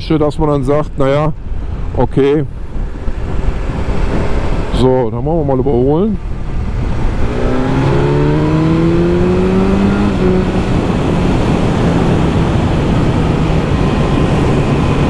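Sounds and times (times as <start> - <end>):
wind noise on helmet: 0.6 - 15.0
motorcycle engine accelerating: 6.2 - 15.0.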